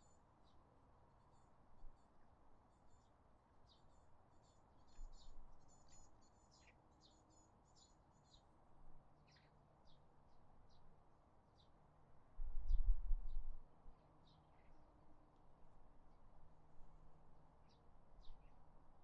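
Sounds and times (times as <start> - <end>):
small birds chirping: 0.0 - 8.6, 9.2 - 11.8, 14.1 - 15.0, 17.6 - 18.7.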